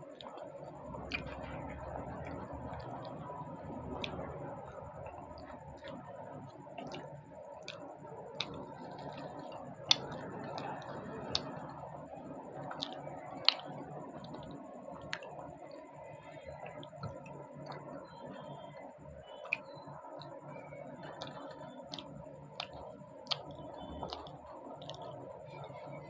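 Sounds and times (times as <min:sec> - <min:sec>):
chewing mouth clicks and smacks: 0:00.1 - 0:11.8, 0:12.6 - 0:26.0.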